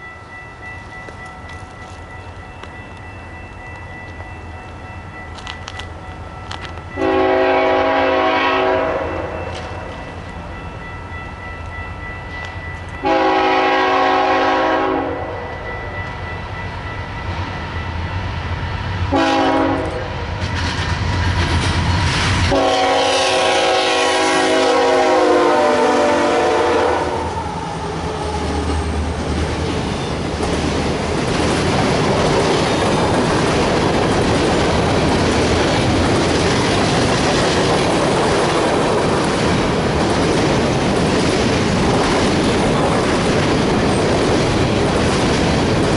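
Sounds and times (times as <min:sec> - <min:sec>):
locomotive horn blasts: 0:07.0 - 0:09.6, 0:13.0 - 0:15.5, 0:19.1 - 0:20.1, 0:22.5 - 0:27.4
freight cars clattering on rails: 0:19.9 - 0:22.6, 0:28.0 - 0:45.9
locomotive engine rumble: 0:24.2 - 0:45.9.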